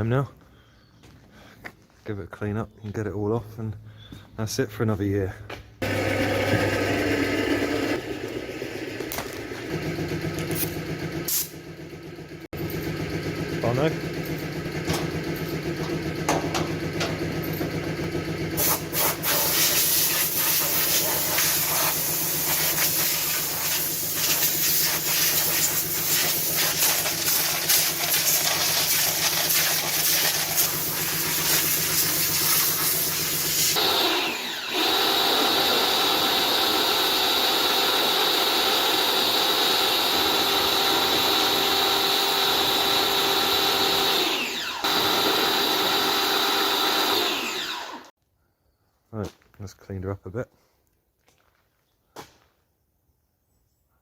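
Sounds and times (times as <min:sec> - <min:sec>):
pressure washer jet hissing: 0:10.4 - 0:11.6, 0:18.5 - 0:44.1.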